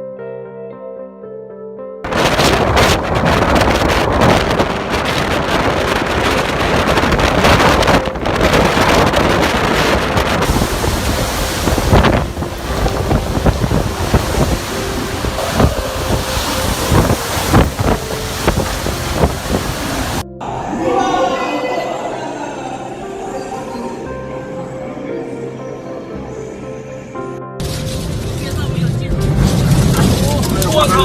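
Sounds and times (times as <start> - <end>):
wind blasting the microphone: 2.1 - 20.9.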